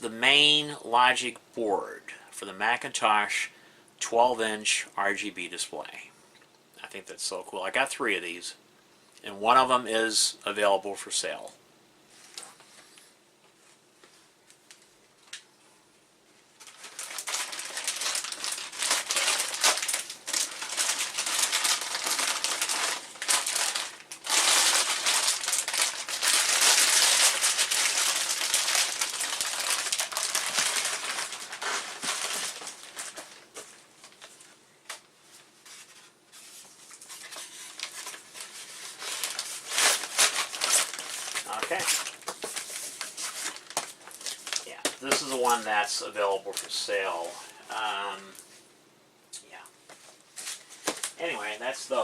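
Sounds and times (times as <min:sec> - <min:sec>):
packaging crinkling: 0:16.5 - 0:45.7, 0:50.4 - 0:51.6.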